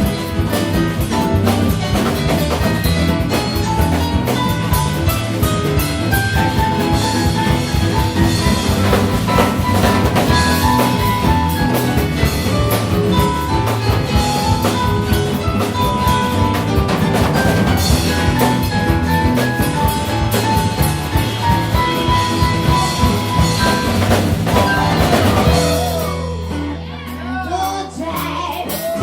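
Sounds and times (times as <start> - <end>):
drum kit beat: 0.0 - 29.0.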